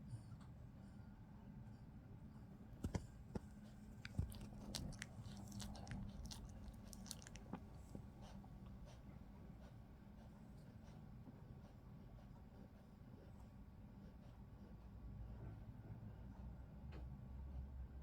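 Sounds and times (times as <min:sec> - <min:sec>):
dog chewing or licking: 0:02.8 - 0:09.7.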